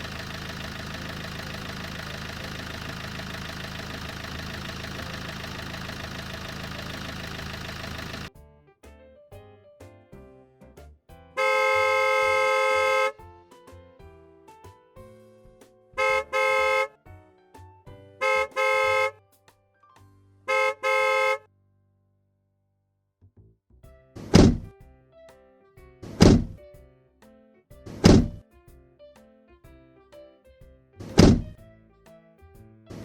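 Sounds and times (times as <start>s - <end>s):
car horn honking: 0.0s - 8.3s, 11.4s - 13.2s, 16.0s - 17.0s, 18.2s - 19.2s, 20.5s - 21.5s
car door slamming: 26.2s - 26.5s, 28.1s - 28.4s, 31.2s - 31.4s.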